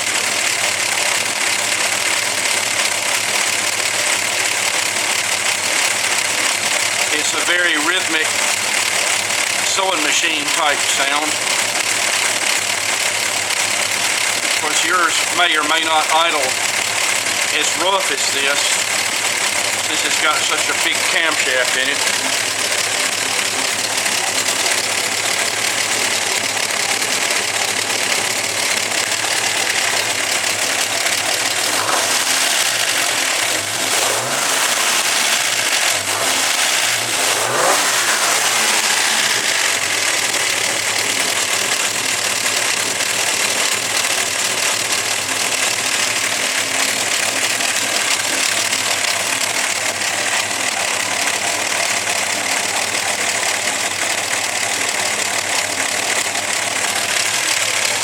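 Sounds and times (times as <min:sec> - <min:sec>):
car engine idling roughly: 0:00.0 - 0:58.0
engine revving: 0:00.0 - 0:58.0
ticking of solid lifters: 0:00.2 - 0:44.5.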